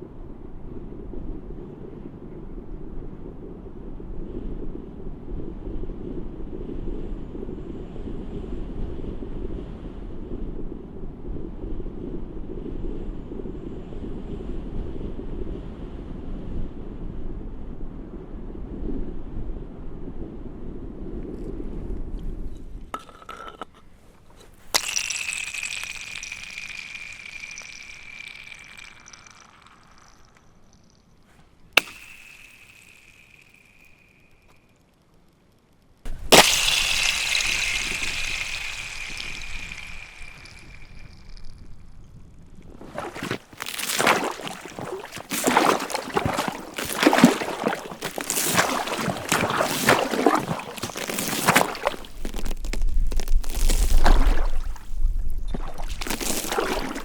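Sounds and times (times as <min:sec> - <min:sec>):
ice cracking: 0:24.6 - 0:31.0, 0:31.8 - 0:34.4, 0:36.1 - 0:41.6, 0:42.8 - 0:57.0
ice ringing tone: 0:24.7 - 0:34.9, 0:36.1 - 0:42.0, 0:43.0 - 0:54.8.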